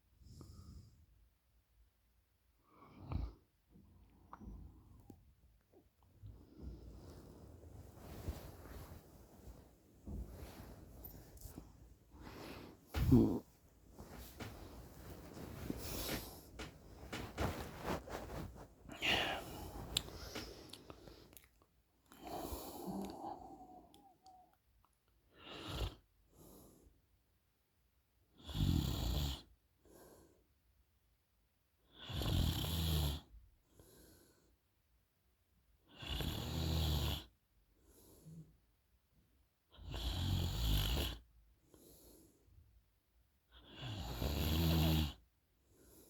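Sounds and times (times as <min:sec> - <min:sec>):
soft breathing out: 0:06.3 - 0:21.5, 0:22.1 - 0:24.4
woman snoring: 0:12.2 - 0:14.5, 0:18.9 - 0:20.6, 0:22.2 - 0:23.9.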